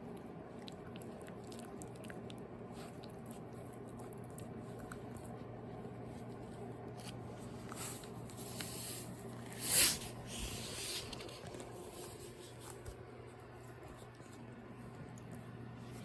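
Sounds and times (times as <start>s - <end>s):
short hissing burst: 8.7s - 11.1s.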